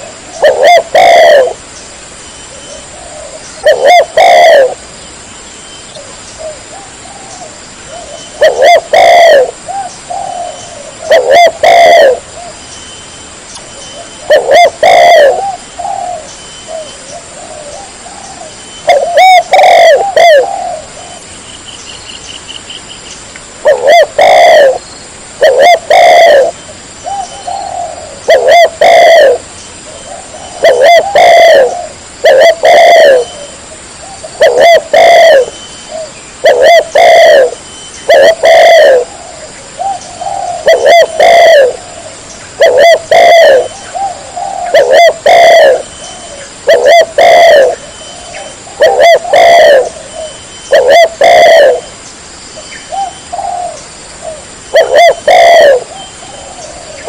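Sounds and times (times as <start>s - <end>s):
dove cooing: 0.0s - 1.7s, 2.5s - 4.9s, 6.0s - 12.6s, 13.8s - 21.3s, 23.6s - 24.8s, 25.4s - 52.0s, 52.9s - 57.0s.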